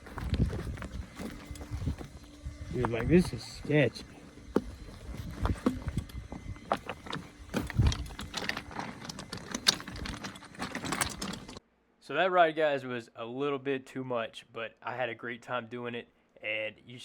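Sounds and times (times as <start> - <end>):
knocks clicks and rattles: 0.0 - 11.6.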